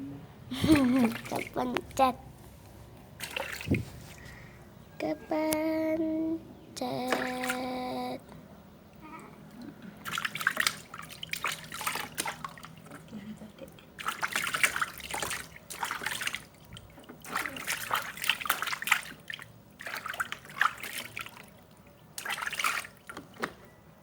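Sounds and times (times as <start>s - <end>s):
water splashing: 0.5s - 2.1s, 3.2s - 4.4s, 6.8s - 8.2s, 9.5s - 23.7s.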